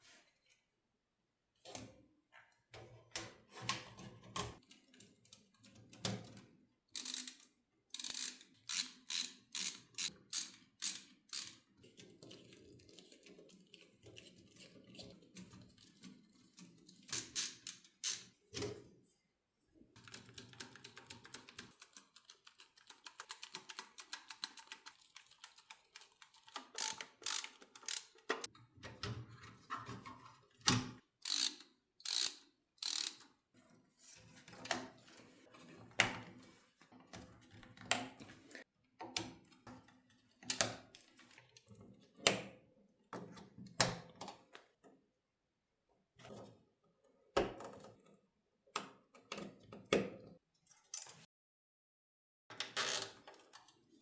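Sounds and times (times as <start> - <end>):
rapid ratcheting clicks: 7.0 - 7.4, 8.0 - 11.6, 26.4 - 28.5, 31.2 - 33.2
parts and tools clacking: 26.4 - 28.5.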